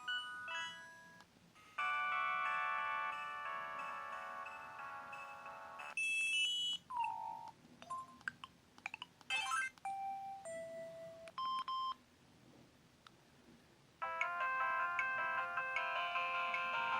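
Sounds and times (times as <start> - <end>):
polyphonic ringtone melody: 1.6 - 7.5, 14.0 - 16.9.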